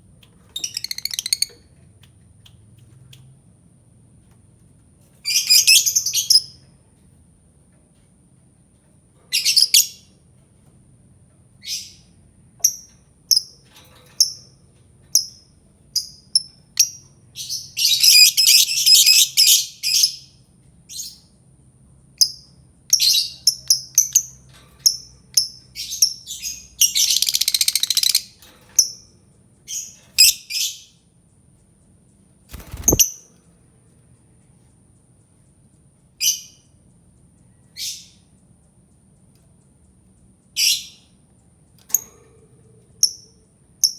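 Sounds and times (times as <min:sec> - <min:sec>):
lovebird chirping: 0:00.6 - 0:01.6, 0:16.0 - 0:20.1, 0:22.9 - 0:29.0, 0:32.6 - 0:33.2.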